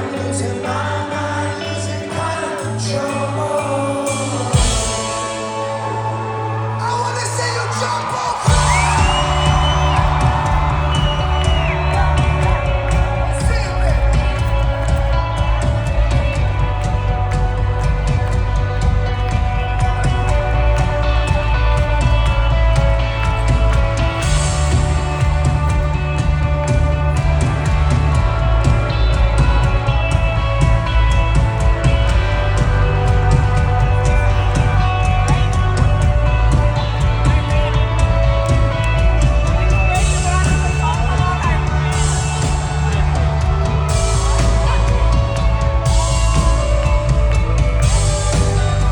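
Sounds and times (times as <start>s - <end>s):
audience singing along: 0.0s - 6.8s
heavy bass: 0.0s - 48.9s
rock band playing live: 0.0s - 48.9s
audience whooping: 4.6s - 48.9s
steady drum beat: 8.4s - 48.9s.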